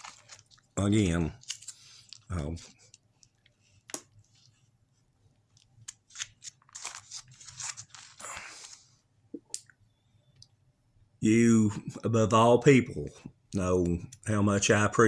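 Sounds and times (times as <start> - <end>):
packaging crinkling: 0.0 - 3.0, 5.6 - 8.9.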